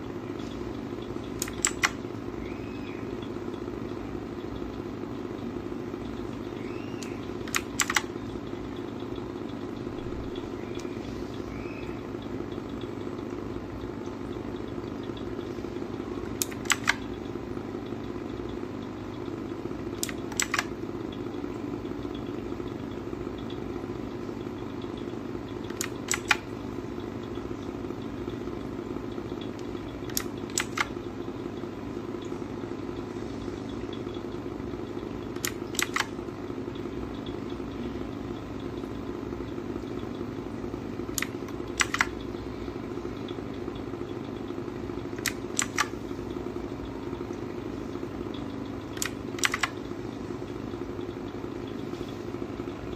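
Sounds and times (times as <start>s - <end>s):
steady low hum: 0.0s - 52.9s
keyboard keys clicking: 1.3s - 2.0s, 7.0s - 8.4s, 16.4s - 17.3s, 20.0s - 20.7s, 25.0s - 26.5s, 29.3s - 31.0s, 35.3s - 36.2s, 41.1s - 42.3s, 45.2s - 46.0s, 48.3s - 49.9s.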